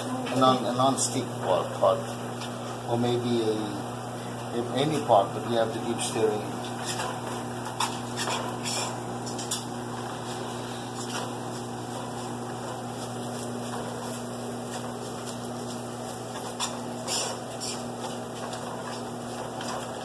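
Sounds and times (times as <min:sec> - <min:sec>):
low constant hum: 0:00.0 - 0:20.0
spices frying in oil: 0:00.6 - 0:20.0
stirring scrapes and knocks: 0:06.0 - 0:20.0.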